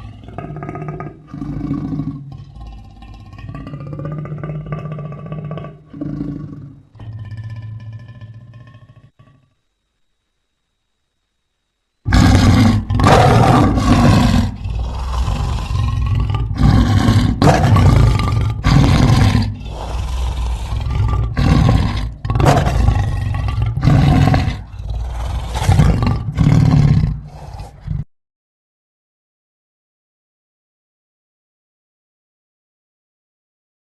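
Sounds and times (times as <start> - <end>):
big cat roaring: 0.0 - 9.4, 12.1 - 28.1
low rumbling growl: 0.0 - 9.4, 12.1 - 28.1.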